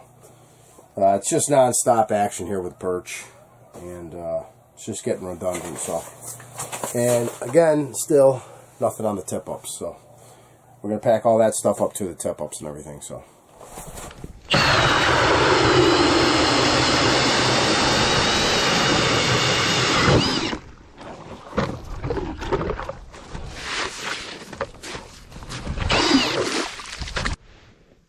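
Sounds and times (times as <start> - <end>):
cordless drill spinning ice auger: 14.5 - 20.6, 25.8 - 26.7.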